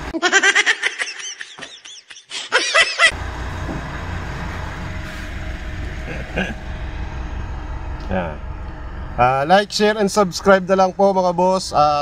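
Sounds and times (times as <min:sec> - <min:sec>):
car engine idling: 0:03.1 - 0:12.0.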